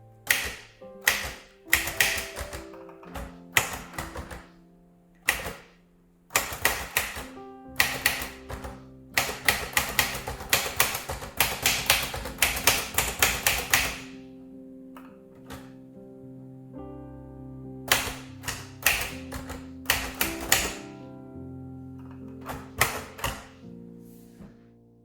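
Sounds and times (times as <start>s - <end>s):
manual typewriter typing: 0.2s - 4.6s, 5.2s - 5.7s, 6.3s - 14.2s, 17.9s - 20.9s, 22.0s - 23.6s.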